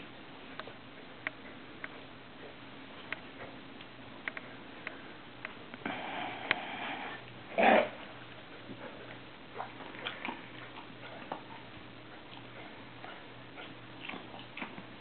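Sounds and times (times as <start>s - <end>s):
loud breath noise: 5.8s - 7.2s.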